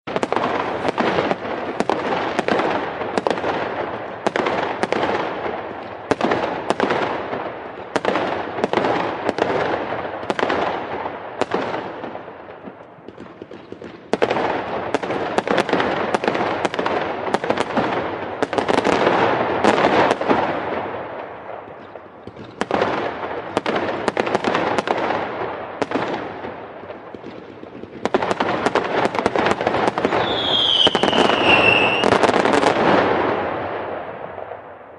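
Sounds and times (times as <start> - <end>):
fireworks cracking and crackling: 0.0 - 34.9.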